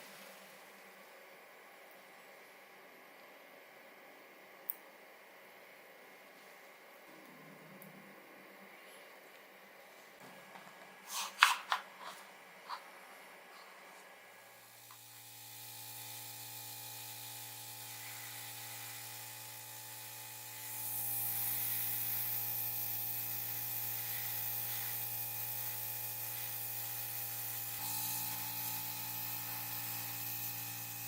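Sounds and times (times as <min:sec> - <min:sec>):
small electric motor humming: 0:14.5 - 0:31.0.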